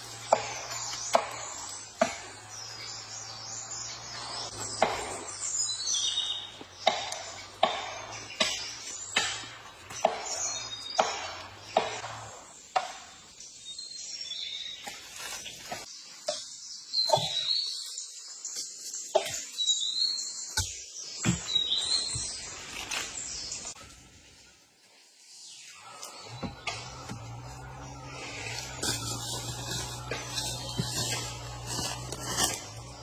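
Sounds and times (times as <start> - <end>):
bird chirps: 13.5 - 23.8, 25.6 - 33.0.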